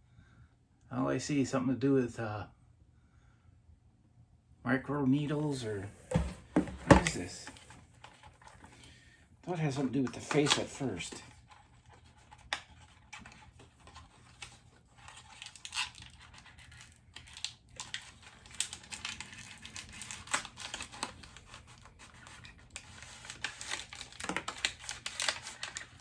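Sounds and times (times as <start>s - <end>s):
packaging crinkling: 10.2s - 26.0s.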